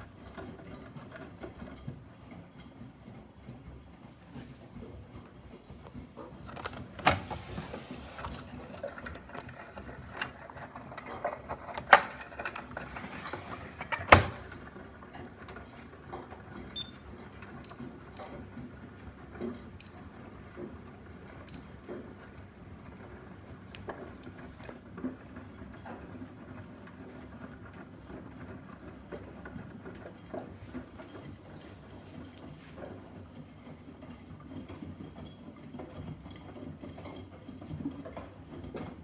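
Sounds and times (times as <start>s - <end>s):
washing machines running: 0.0s - 39.0s
drum clicking and knocking: 5.3s - 14.8s.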